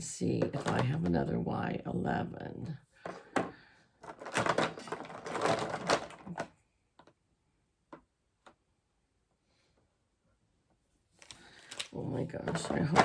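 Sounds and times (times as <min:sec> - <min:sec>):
plastic markers clattering: 0:03.1 - 0:07.1, 0:11.2 - 0:13.0.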